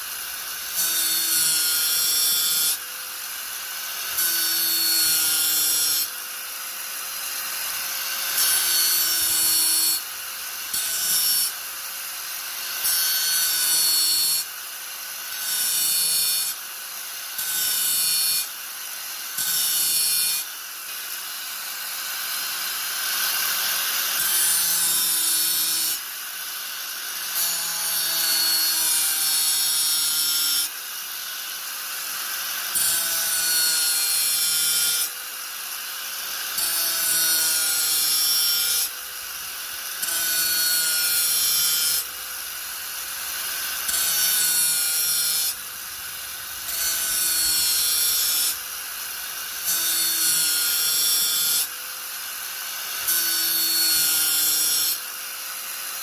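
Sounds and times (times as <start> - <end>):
hissing grind of disc on workpiece: 35.8 - 51.7.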